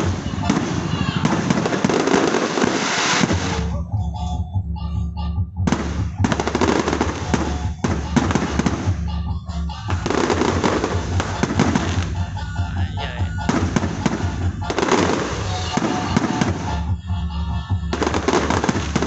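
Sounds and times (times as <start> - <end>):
fireworks bangs and crackles: 0.0 - 3.7, 5.7 - 9.0, 9.9 - 12.1, 13.4 - 16.8, 17.9 - 19.0.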